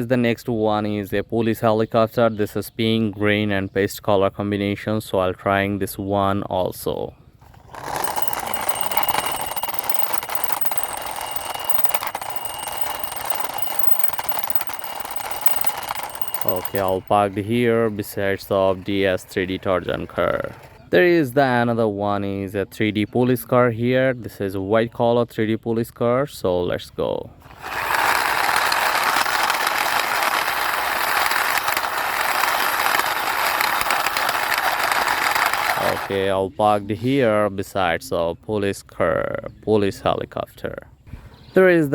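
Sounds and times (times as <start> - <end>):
plastic toy clicking rattle: 7.5 - 17.2, 27.5 - 36.1.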